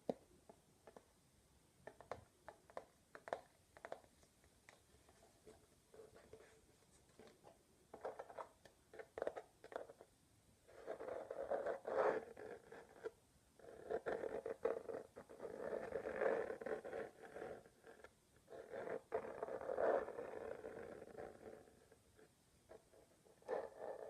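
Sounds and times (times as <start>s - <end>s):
small taps and rustles: 1.8s - 10.1s.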